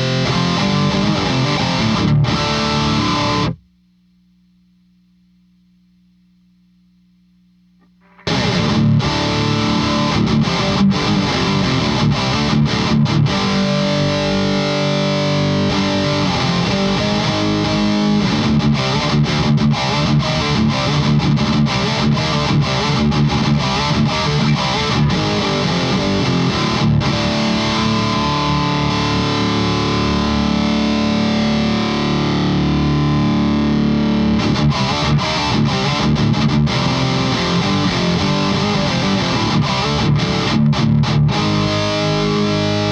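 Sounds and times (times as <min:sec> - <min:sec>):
distorted electric guitar: 0:00.0 - 0:03.8, 0:07.8 - 0:42.9.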